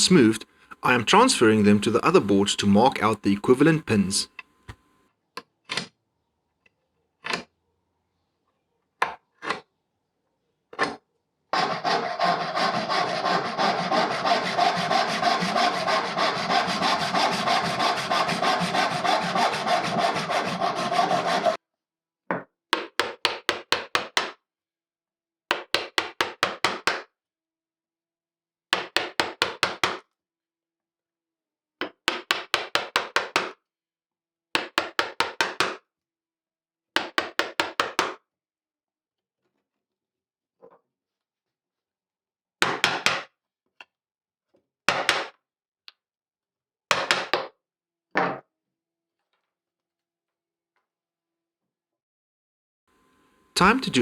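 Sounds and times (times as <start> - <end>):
hand saw cutting wood: 11.6 - 21.6.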